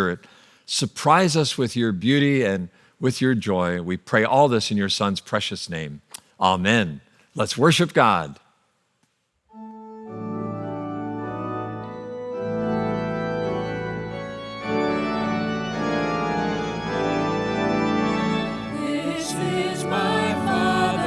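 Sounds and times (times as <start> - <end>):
organ playing sustained chords: 9.5 - 21.0.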